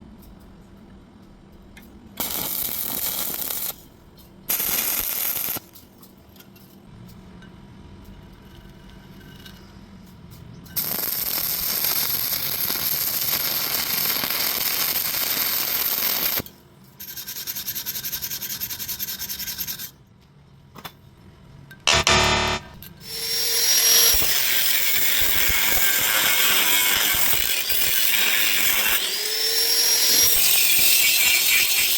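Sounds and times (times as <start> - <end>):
welding arc crackling: 2.2 - 3.8, 4.5 - 5.8, 10.8 - 16.4, 21.9 - 31.9.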